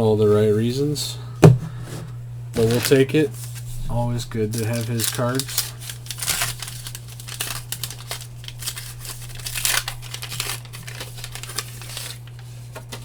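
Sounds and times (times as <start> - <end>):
steady low hum: 0.0 - 6.2
trading cards rustling: 1.4 - 3.7, 4.4 - 13.0
foil pack crinkling: 2.6 - 13.0.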